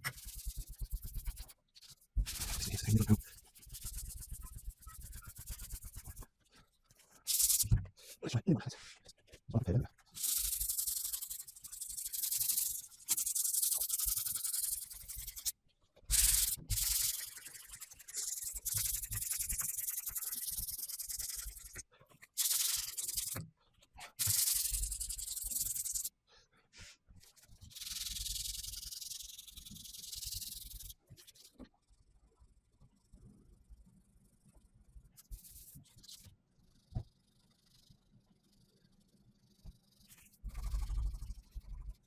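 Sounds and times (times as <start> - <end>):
hand sanding metal panel: 0.0 - 1.6, 2.2 - 6.2.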